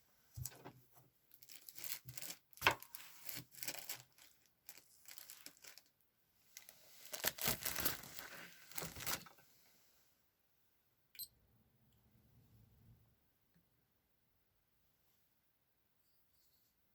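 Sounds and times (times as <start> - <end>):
paper rustling and crinkling: 1.4 - 5.9, 6.5 - 9.4.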